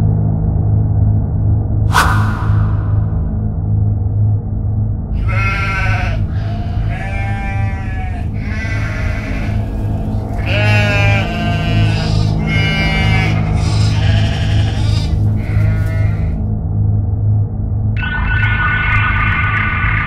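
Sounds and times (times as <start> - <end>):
wavering bleats: 5.2 - 16.4.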